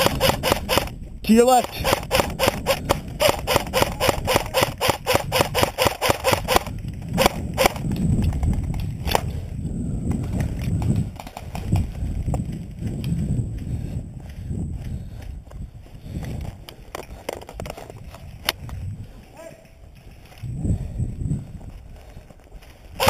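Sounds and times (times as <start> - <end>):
airsoft rifle firing: 0.0 - 0.9, 1.5 - 7.8.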